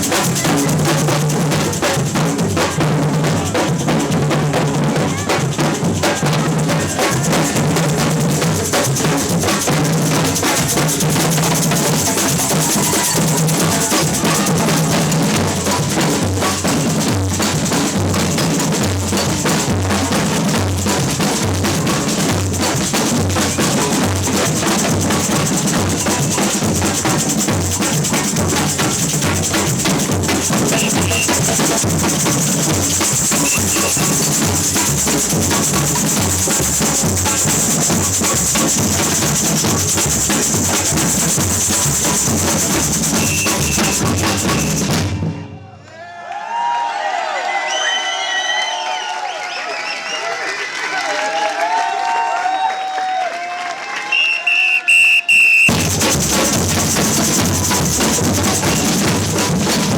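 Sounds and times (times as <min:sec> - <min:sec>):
samba percussion band playing: 0:00.0 - 0:45.5, 0:54.1 - 0:59.9
low bass drums: 0:55.7 - 0:59.9.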